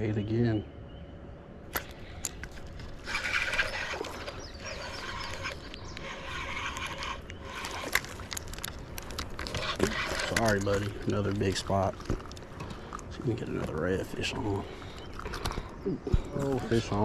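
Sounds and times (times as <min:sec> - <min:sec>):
fishing reel whirring and clicking: 0:01.8 - 0:10.9.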